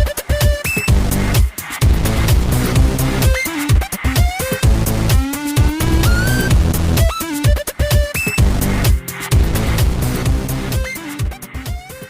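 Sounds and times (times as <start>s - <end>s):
electronic dance music: 0.0s - 12.0s.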